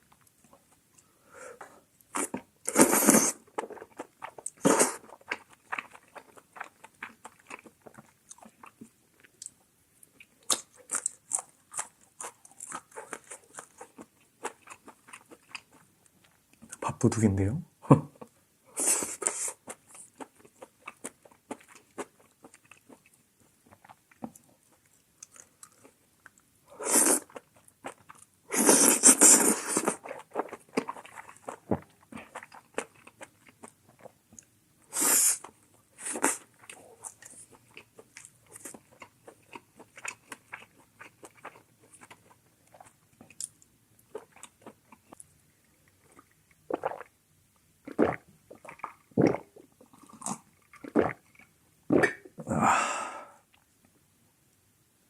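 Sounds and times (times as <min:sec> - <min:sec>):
chewing and crunching: 0:03.4 - 0:16.8, 0:19.6 - 0:26.5, 0:27.2 - 0:28.4, 0:29.0 - 0:34.5, 0:35.5 - 0:47.1.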